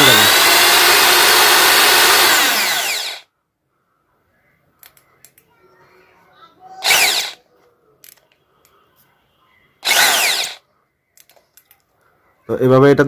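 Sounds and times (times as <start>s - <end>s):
electric drill whining: 0.0s - 3.2s, 6.8s - 7.4s, 9.8s - 10.6s.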